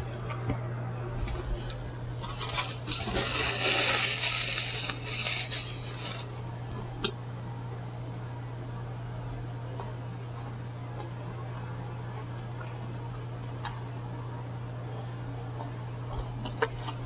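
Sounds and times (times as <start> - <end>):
paper wrapper crinkling: 0.0 - 6.3
low electrical hum: 0.0 - 17.0.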